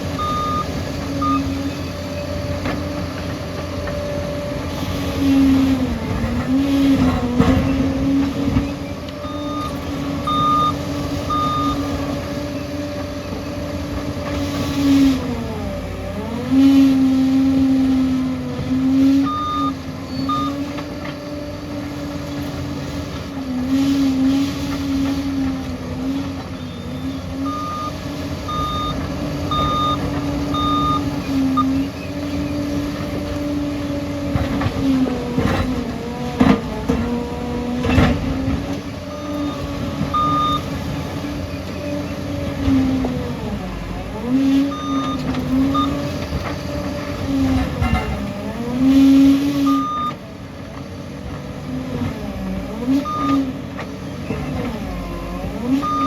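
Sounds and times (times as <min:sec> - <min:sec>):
bulldozer diesel engine running: 0:00.0 - 0:56.0
reversing alarm beeping: 0:00.2 - 0:02.5, 0:09.2 - 0:12.7, 0:19.2 - 0:20.7, 0:26.7 - 0:31.9, 0:39.1 - 0:40.9, 0:44.6 - 0:46.5, 0:49.6 - 0:50.2, 0:52.9 - 0:53.6, 0:54.9 - 0:56.0.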